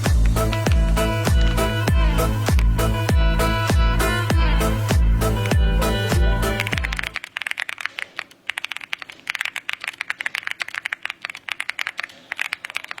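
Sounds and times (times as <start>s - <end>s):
background music: 0.0s - 7.2s
typing on mechanical keyboard: 6.6s - 13.0s.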